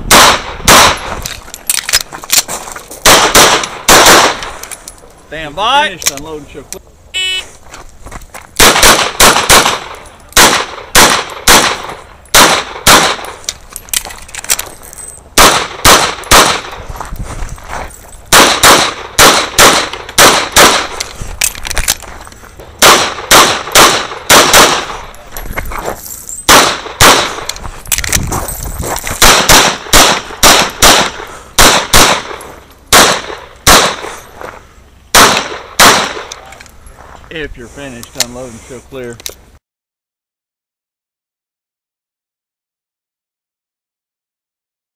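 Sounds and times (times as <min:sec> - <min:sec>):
rapid pistol shots: 0:00.1 - 0:01.1, 0:03.0 - 0:04.5, 0:08.6 - 0:13.4, 0:15.4 - 0:16.8, 0:18.3 - 0:21.0, 0:22.8 - 0:25.1, 0:26.5 - 0:27.5, 0:29.2 - 0:34.2, 0:35.1 - 0:36.3.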